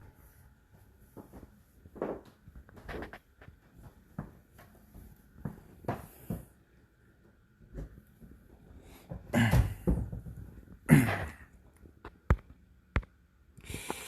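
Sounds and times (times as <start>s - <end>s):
breathy vocal sounds: 9.0s - 10.0s, 10.9s - 11.5s.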